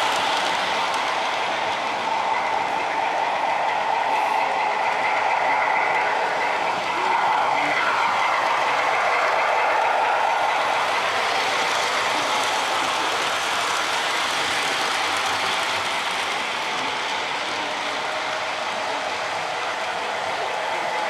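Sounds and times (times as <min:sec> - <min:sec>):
model train rolling rumble: 0:00.0 - 0:21.0.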